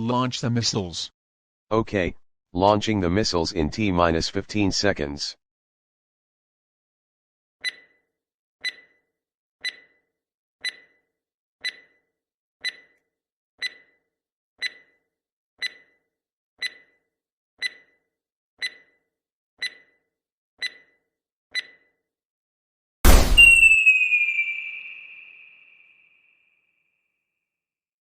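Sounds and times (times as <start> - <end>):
high electronic countdown beeps: 7.6 - 8.0, 8.6 - 9.0, 9.6 - 10.0, 10.6 - 11.0, 11.6 - 12.0, 12.6 - 13.0, 13.6 - 14.0, 14.6 - 15.0, 15.6 - 16.0, 16.6 - 17.0, 17.6 - 18.0, 18.6 - 19.0, 19.6 - 20.0, 20.6 - 21.0, 21.6 - 21.8.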